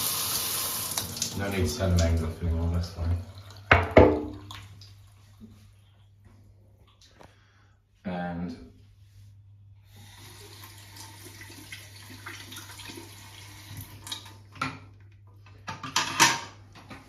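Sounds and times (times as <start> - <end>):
shower water hissing: 0.0 - 2.2, 9.1 - 14.1.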